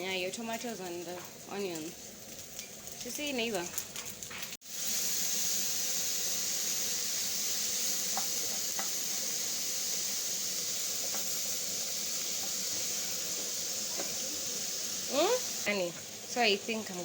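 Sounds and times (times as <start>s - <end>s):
pork sizzling in a pan: 0.0s - 17.0s.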